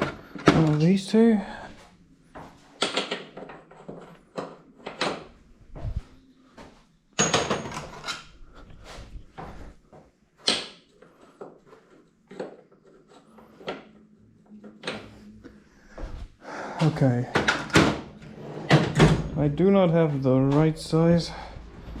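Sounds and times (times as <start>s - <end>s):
tools clattering: 7.2s - 8.4s.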